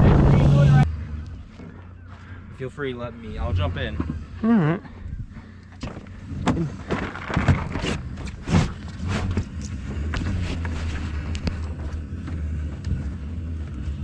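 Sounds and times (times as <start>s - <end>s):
low motor drone: 0.0s - 14.0s
gear knocking and clattering: 5.8s - 14.0s.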